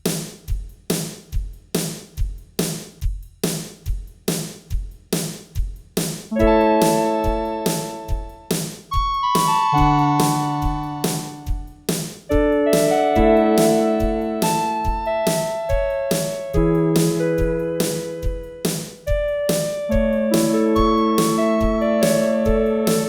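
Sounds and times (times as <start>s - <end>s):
drum machine beat: 0.0s - 23.0s
synth chords: 6.3s - 8.4s, 9.0s - 11.7s, 12.4s - 18.4s.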